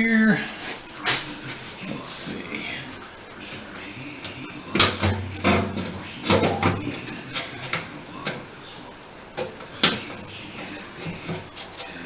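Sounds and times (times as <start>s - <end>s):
fan assembly knocks and clunks: 4.7s - 8.4s.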